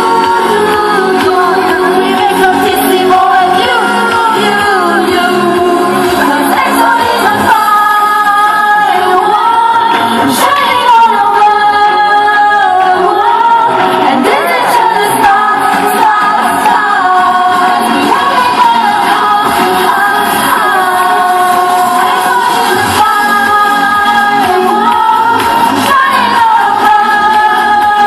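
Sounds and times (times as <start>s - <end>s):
steady musical accompaniment: 0.0s - 28.0s.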